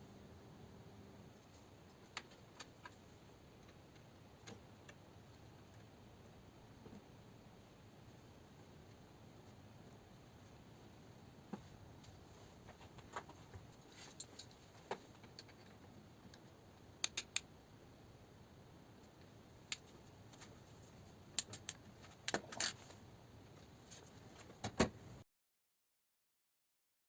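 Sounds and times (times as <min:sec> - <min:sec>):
faint room hiss: 0:00.0 - 0:25.2
small sharp clicks: 0:17.0 - 0:17.5.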